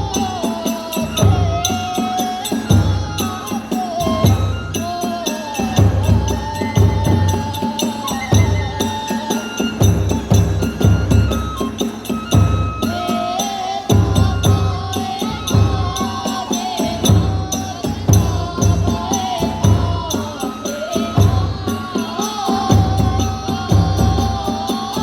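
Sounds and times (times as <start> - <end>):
hand cymbals clashing: 0.0 - 25.0
wavering flute melody: 0.0 - 25.0
taiko drum beating: 5.6 - 13.1, 13.9 - 25.0.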